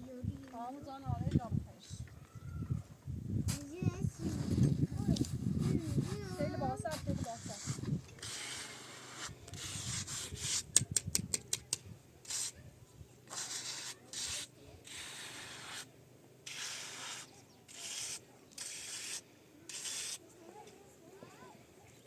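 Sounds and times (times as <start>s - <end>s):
rubbing or scraping strokes: 3.5s - 10.8s, 12.2s - 12.6s, 13.3s - 20.2s.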